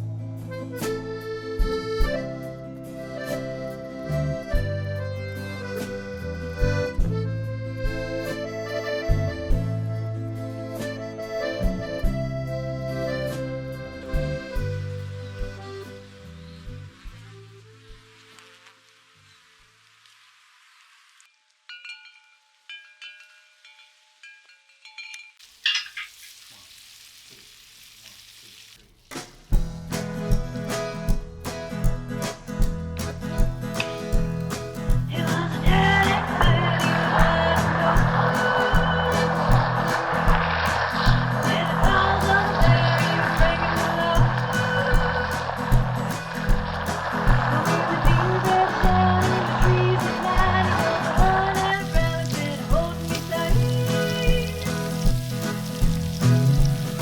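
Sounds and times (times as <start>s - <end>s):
bouncy accordion tune: 0.0s - 18.3s, 29.7s - 57.0s
food sizzling on a grill: 15.3s - 21.5s, 25.4s - 29.1s, 35.0s - 57.0s
metallic clinks: 21.7s - 26.2s.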